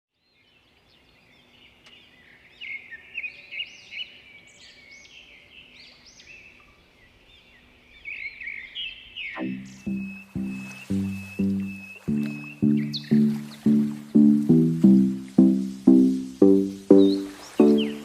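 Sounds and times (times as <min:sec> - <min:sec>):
birds chirping and whistling: 0:08.1 - 0:14.4, 0:16.9 - 0:18.0.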